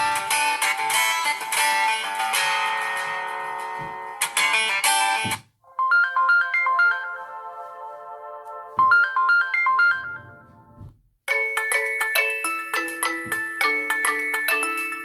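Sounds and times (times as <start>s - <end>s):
bright melodic ringtone: 5.7s - 10.6s, 11.3s - 15.0s
guitar-strummed ringtone: 5.8s - 7.2s.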